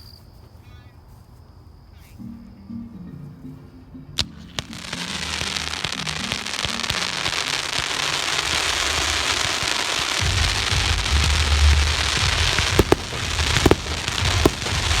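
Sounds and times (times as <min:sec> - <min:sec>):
fireworks crackling: 0:04.2 - 0:15.0
deep firework booms: 0:05.3 - 0:15.0
firework bang: 0:07.1 - 0:15.0.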